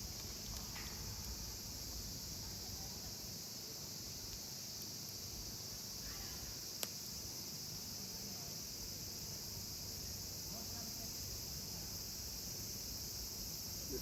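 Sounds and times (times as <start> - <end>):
insects chorus: 0.0 - 14.0.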